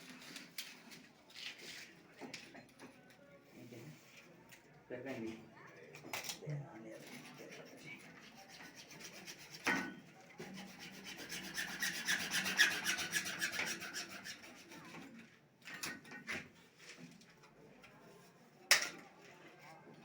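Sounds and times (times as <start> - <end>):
hand tool rasping: 7.1 - 15.0.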